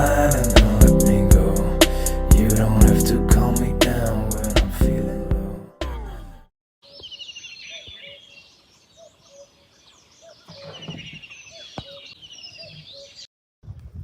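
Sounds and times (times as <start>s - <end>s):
songbirds chirping and trilling: 6.8s - 13.3s.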